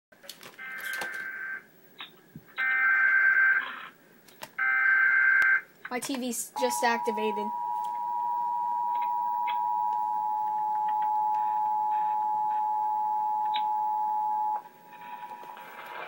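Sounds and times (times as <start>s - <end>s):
harsh two-tone alarm signal: 6.6s - 14.6s.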